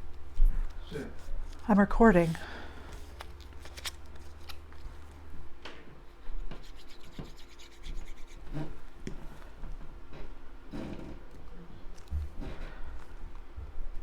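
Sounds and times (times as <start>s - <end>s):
card pieces scraping and tapping: 3.1s - 4.6s.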